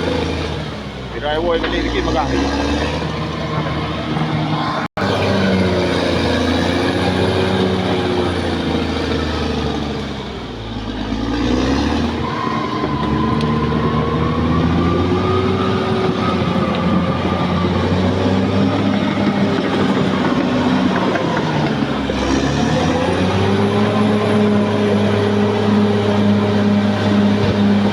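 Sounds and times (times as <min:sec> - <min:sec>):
bulldozer diesel engine running: 0:00.0 - 0:27.9.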